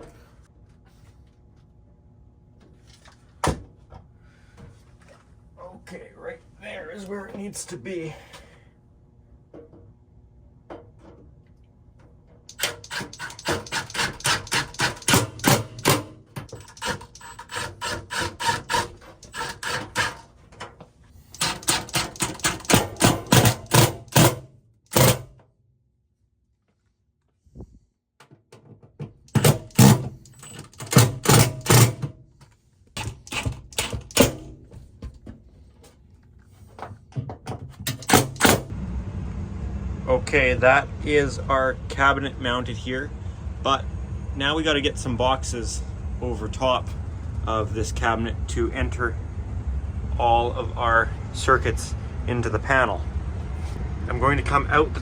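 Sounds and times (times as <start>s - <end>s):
power driver driving screws: 12.5s - 20.2s, 21.3s - 25.2s.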